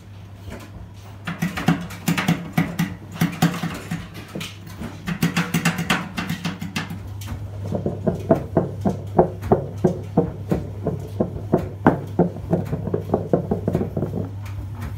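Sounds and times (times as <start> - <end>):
washing machine drum clattering: 0.5 - 14.9
low motor hum: 6.6 - 14.9.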